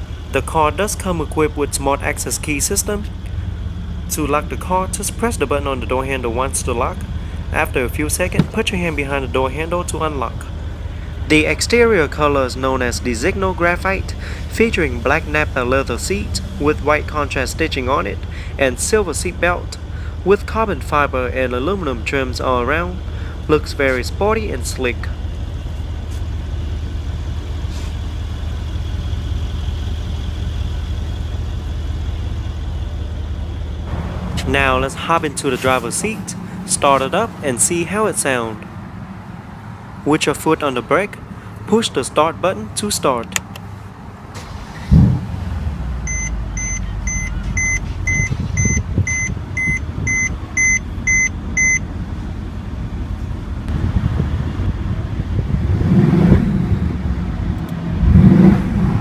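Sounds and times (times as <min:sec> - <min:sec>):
background rush: 0:00.0 - 0:59.0
low engine hum: 0:00.0 - 0:59.0
warning chime beeping: 0:46.1 - 0:51.8.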